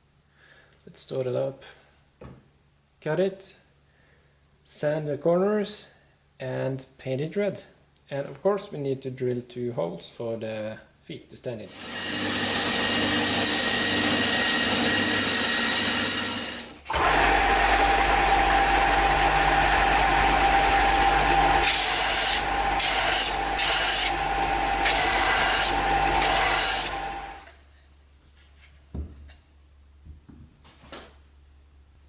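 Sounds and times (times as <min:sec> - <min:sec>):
power tool cutting wood: 0:11.7 - 0:27.6
power tool running: 0:11.7 - 0:27.6.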